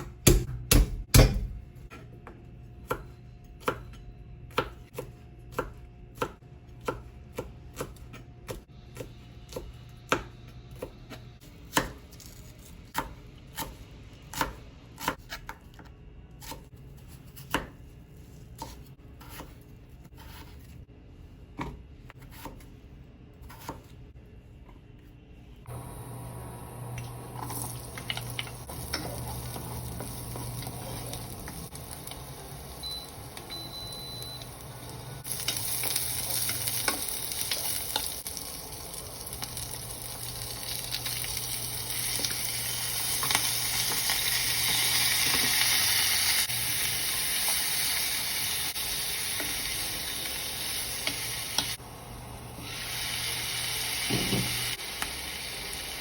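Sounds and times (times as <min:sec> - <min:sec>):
food sizzling in frying pan: 0:25.7 - 0:56.0.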